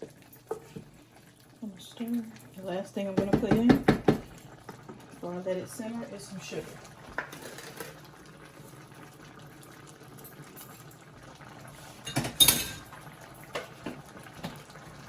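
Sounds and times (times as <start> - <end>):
sauce simmering and bubbling: 0.0 - 15.0
utensil clattering against pot: 12.0 - 12.9.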